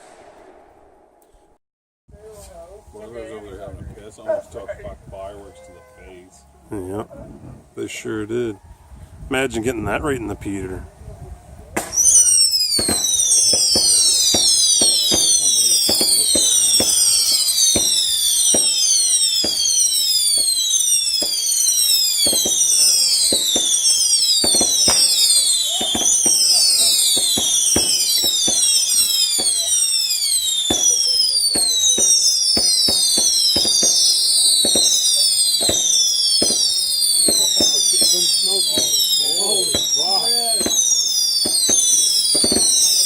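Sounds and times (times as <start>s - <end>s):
whistling fireworks: 0.0s - 1.4s, 11.8s - 43.0s
firework cracks and pops: 11.8s - 43.0s.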